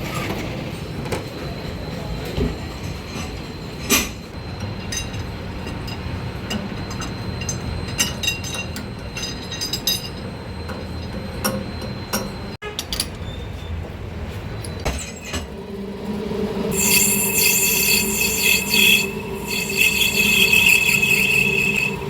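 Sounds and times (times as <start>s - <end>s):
metal lathe humming: 15.5s - 22.0s.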